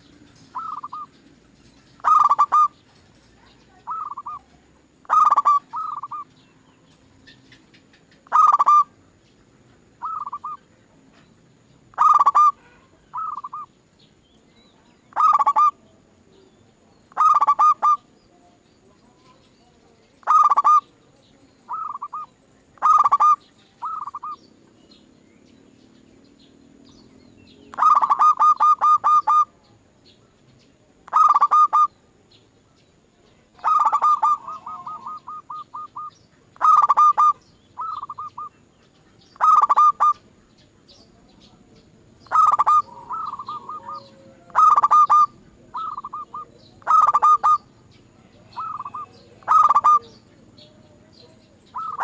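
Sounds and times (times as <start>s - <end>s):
dove cooing: 0.0s - 1.1s, 2.0s - 2.8s, 3.8s - 4.4s, 5.0s - 6.3s, 8.2s - 8.9s, 10.0s - 10.6s, 11.9s - 13.7s, 15.1s - 15.8s, 17.1s - 18.1s, 20.2s - 20.9s, 21.7s - 24.4s, 27.7s - 29.5s, 31.1s - 31.9s, 33.6s - 38.5s, 39.4s - 40.2s, 42.2s - 47.7s, 48.4s - 50.8s, 51.7s - 52.0s.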